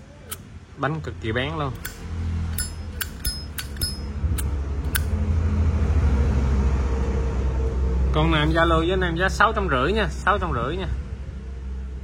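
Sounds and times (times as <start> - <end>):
lighter flint wheel striking: 1.8 - 5.1.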